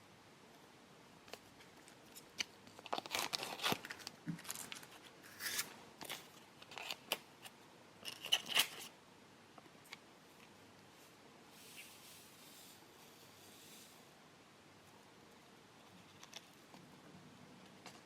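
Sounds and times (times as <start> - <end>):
plastic packets crinkling: 2.7 - 5.0.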